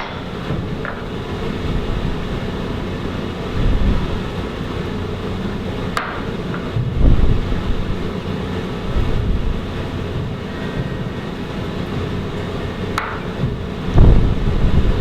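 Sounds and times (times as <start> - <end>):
low mechanical rumble: 0.0 - 15.0
heavy low thump: 6.7 - 7.8, 13.0 - 15.0.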